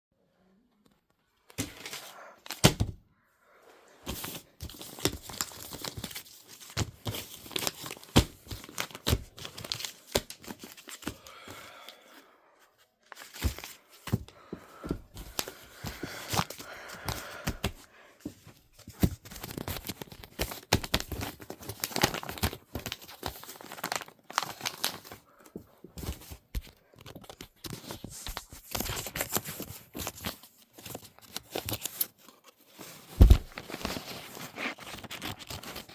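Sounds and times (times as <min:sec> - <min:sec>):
packaging tearing and crinkling: 0:19.4 - 0:25.1.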